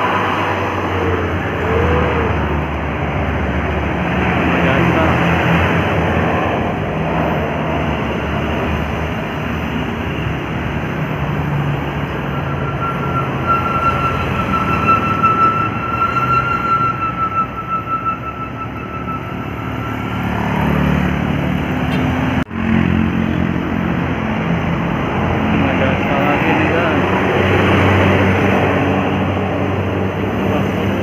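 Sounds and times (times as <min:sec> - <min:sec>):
diesel engine droning: 0:00.0 - 0:31.0
road noise: 0:00.0 - 0:31.0
voices: 0:04.2 - 0:05.6, 0:25.5 - 0:27.9
steady high tone: 0:10.0 - 0:21.6.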